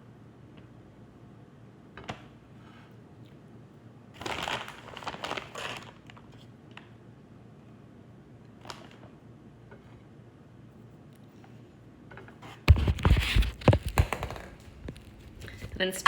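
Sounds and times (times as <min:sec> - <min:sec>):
plastic bag crinkling: 0:04.2 - 0:06.3.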